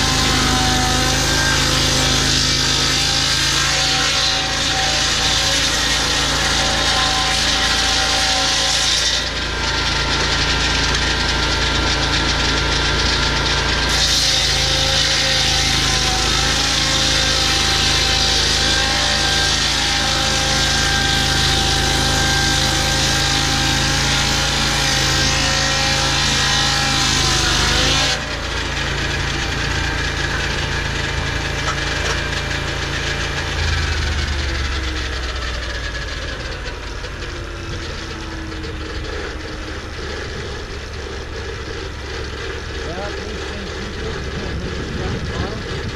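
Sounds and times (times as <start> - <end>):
sawmill engine running: 0.0 - 45.9
deeper hum: 26.7 - 45.9.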